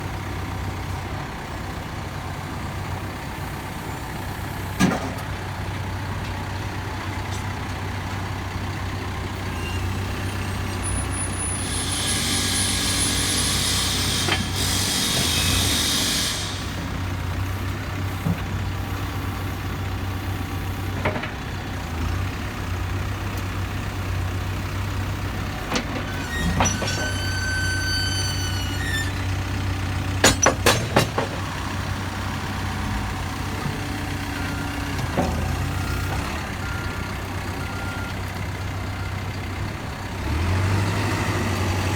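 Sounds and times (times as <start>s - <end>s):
diesel engine running: 0.0s - 41.9s
high squeal: 9.4s - 17.2s, 26.0s - 29.6s
hiss: 11.3s - 17.1s.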